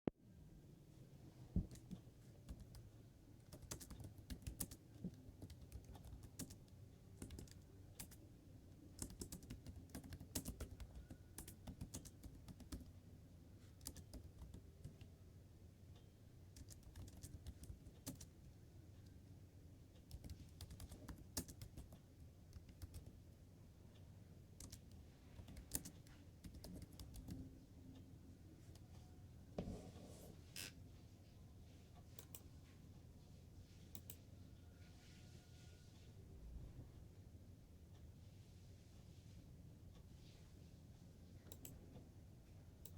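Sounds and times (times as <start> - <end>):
faint keyboard typing: 1.5 - 15.2, 15.9 - 23.3, 23.9 - 30.9, 32.0 - 32.8, 33.7 - 35.4, 41.2 - 42.1.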